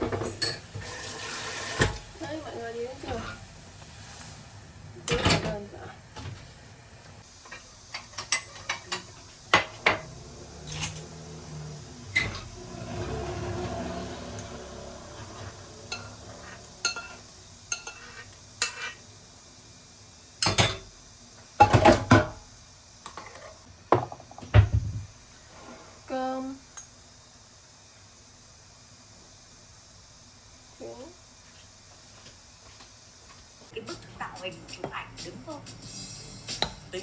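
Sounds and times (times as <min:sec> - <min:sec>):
dishes and utensils clinking: 0:05.0 - 0:05.8, 0:07.5 - 0:11.1, 0:15.2 - 0:19.0, 0:20.4 - 0:20.9.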